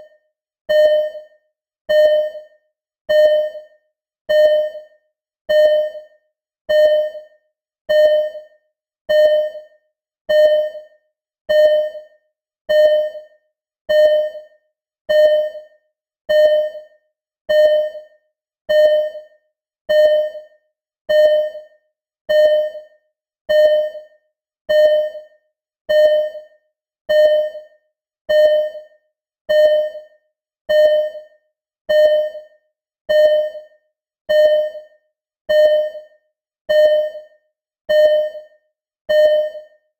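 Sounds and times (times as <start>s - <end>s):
heart monitor beeping: 0.7s - 1.3s, 1.9s - 2.5s, 3.1s - 3.7s, 4.3s - 4.9s, 5.5s - 6.1s, 6.7s - 7.3s, 7.9s - 8.5s, 9.1s - 9.7s, 10.3s - 10.9s, 11.5s - 12.1s, 12.7s - 13.3s, 13.9s - 14.5s, 15.1s - 15.7s, 16.3s - 16.9s, 17.5s - 18.1s, 18.7s - 19.3s, 19.9s - 20.5s, 21.1s - 21.7s, 22.3s - 22.9s, 23.5s - 24.1s, 24.7s - 25.3s, 25.9s - 26.5s, 27.1s - 27.7s, 28.3s - 28.9s, 29.5s - 30.1s, 30.7s - 31.3s, 31.9s - 32.5s, 33.1s - 33.7s, 34.3s - 34.9s, 35.5s - 36.1s, 36.7s - 37.3s, 37.9s - 38.5s, 39.1s - 39.8s.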